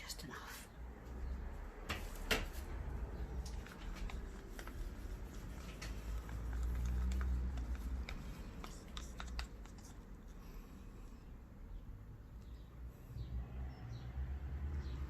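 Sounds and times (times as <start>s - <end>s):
plastic cups clicking and tapping: 3.4s - 10.6s.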